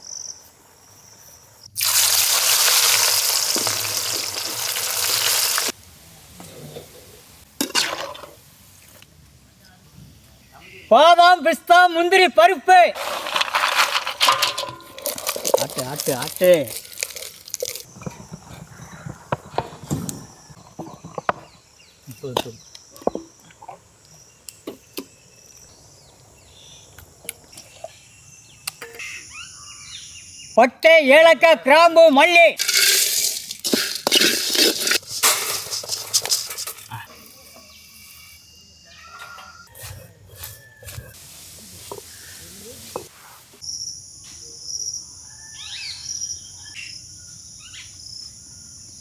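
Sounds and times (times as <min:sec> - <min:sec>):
outdoor background noise: 0:00.0 - 0:49.0
knocks and scrapes: 0:13.0 - 0:21.6, 0:32.6 - 0:37.7
insect chorus: 0:13.0 - 0:31.2, 0:32.6 - 0:39.7, 0:40.6 - 0:49.0.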